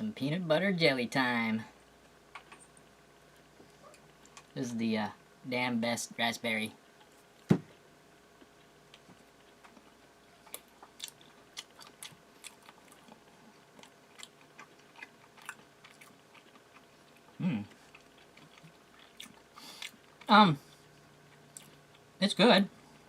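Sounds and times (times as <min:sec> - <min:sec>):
person chewing: 0:02.3 - 0:04.6, 0:08.4 - 0:22.2
throat hum: 0:17.2 - 0:18.8.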